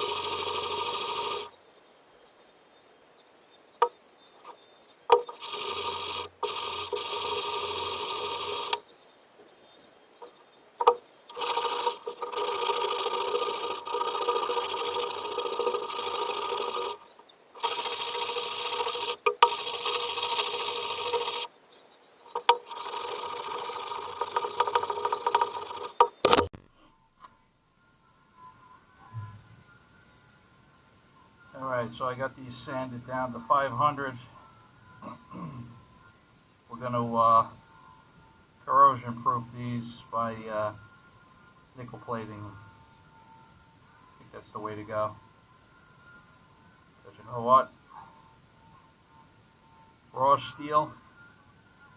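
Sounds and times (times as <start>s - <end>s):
sharp clicks: 4.4s - 8.8s, 10.8s - 21.5s, 22.3s - 27.4s
sanding metal by hand: 5.1s - 8.8s, 10.8s - 21.5s, 22.3s - 26.1s.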